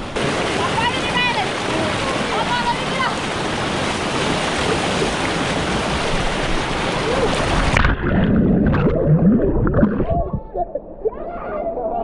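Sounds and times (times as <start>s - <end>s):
waterfall rushing: 0.0s - 7.8s
gurgling water: 0.0s - 12.0s.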